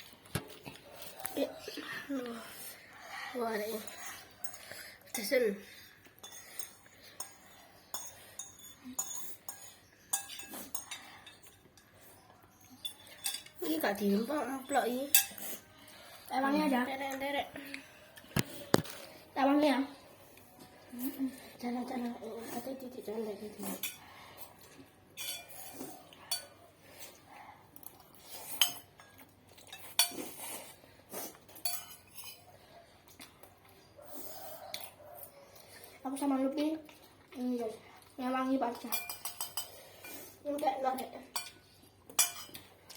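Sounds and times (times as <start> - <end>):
utensils clinking on a dish: 3.8 - 15.6, 25.2 - 26.6, 28.5 - 30.4, 31.5 - 32.5, 38.6 - 40.3, 41.3 - 42.9.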